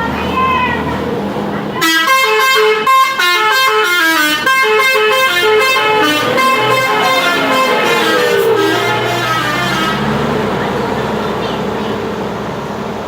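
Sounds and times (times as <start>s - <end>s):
multi-tone bus horn tune: 1.8s - 10.8s.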